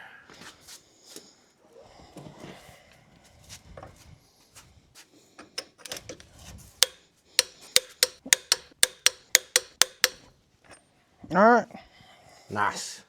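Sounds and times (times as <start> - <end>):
objects being handled: 5.4 - 10.3
sharp click: 6.8 - 10.2.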